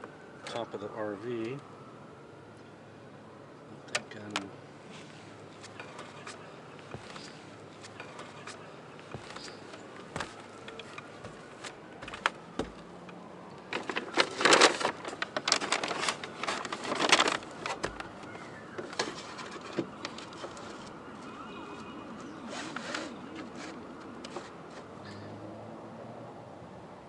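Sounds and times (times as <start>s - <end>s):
rustling and scraping: 4.9s - 12.9s, 13.7s - 25.3s.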